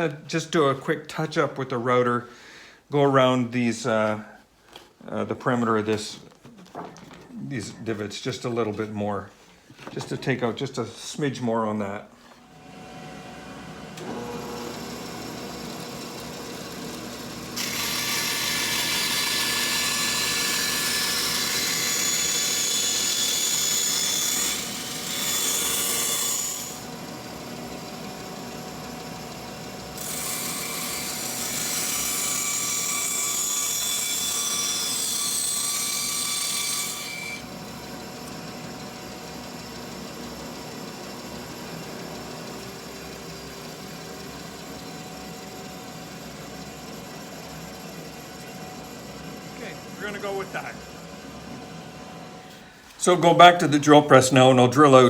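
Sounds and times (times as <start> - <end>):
trim router whining: 12.4 - 55.0
router cutting wood: 12.6 - 55.0.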